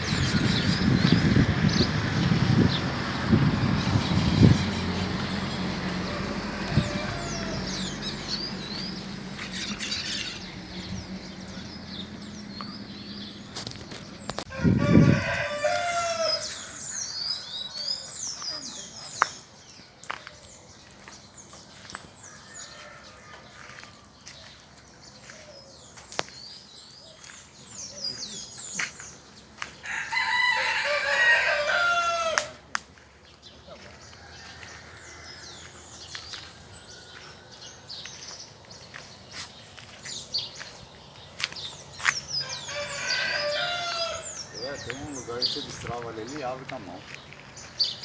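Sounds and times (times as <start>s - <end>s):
small birds chirping: 0.0s - 14.6s, 15.2s - 48.0s
rooster crowing: 5.7s - 8.4s, 14.5s - 16.9s, 22.3s - 23.9s, 29.8s - 32.6s, 34.1s - 37.7s, 42.4s - 44.9s.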